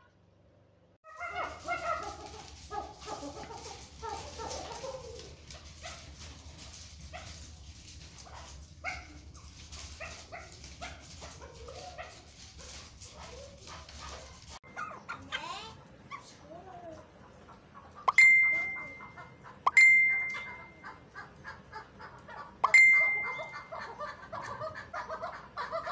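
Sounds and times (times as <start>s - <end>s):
partridges clucking and chattering: 17.1s - 25.9s.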